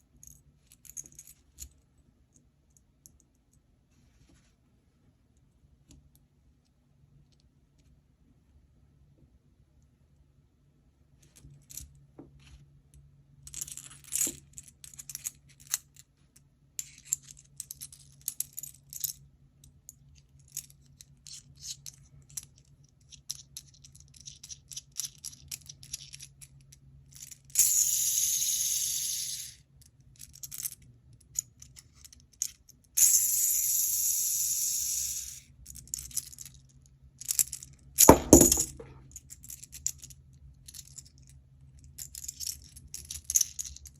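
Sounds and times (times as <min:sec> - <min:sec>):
metallic clicks of fidget gears: 0:27.3 - 0:29.6, 0:32.4 - 0:36.5
loud knock: 0:38.1 - 0:38.9.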